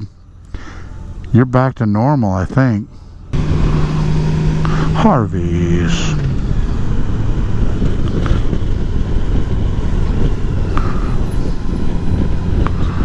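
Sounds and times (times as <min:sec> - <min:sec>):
motorcycle engine rumble: 0:00.0 - 0:13.0
road noise: 0:00.0 - 0:13.0.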